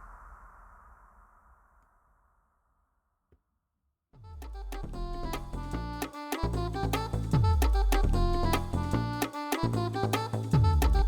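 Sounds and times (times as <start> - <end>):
instrumental music with deep bass: 4.4 - 11.0.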